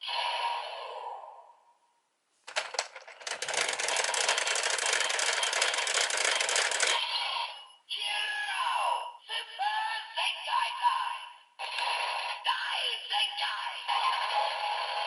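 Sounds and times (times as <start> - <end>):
rapid rattling clatter: 2.5 - 7.0
toy clicks: 2.5 - 7.1
toy electronic audio: 2.6 - 7.7.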